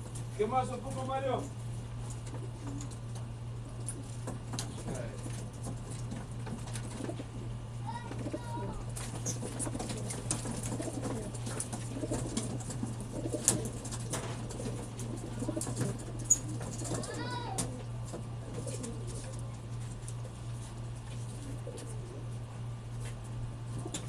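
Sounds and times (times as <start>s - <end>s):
wings fluttering: 3.8s - 22.3s
pigeons cooing: 6.8s - 19.6s, 21.3s - 22.7s, 23.6s - 24.0s
clicks and knocks from crates: 9.0s - 19.3s.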